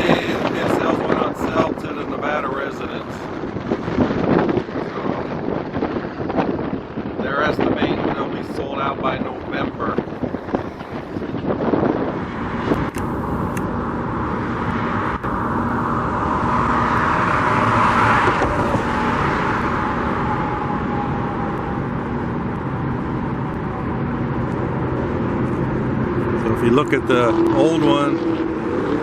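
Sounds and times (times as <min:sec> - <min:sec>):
road traffic noise: 0:00.0 - 0:29.0
vehicle passing by: 0:11.9 - 0:29.0.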